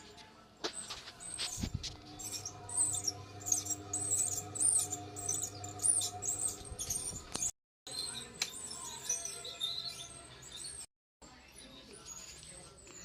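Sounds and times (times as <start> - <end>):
fan bearing squeaking: 0.7 - 10.9.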